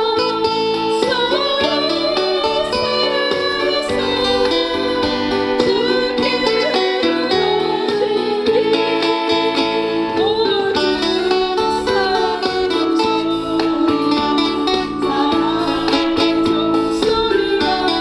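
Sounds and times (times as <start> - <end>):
guitar accompaniment: 0.0 - 18.0
person singing a hymn: 0.0 - 18.0.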